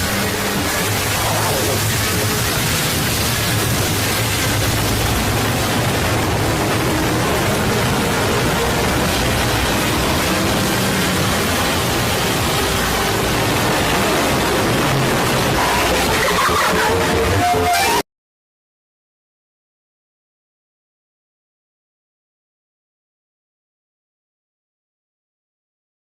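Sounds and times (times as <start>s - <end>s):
harsh distorted static noise: 0.0s - 18.0s.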